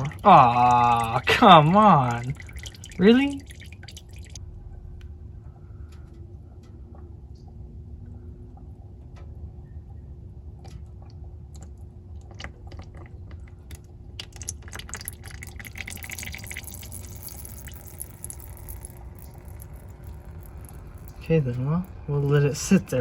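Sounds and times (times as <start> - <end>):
oil pouring into bucket: 0.0 - 4.4, 12.2 - 23.0
oil dripping and splashing: 0.0 - 5.0, 10.5 - 23.0.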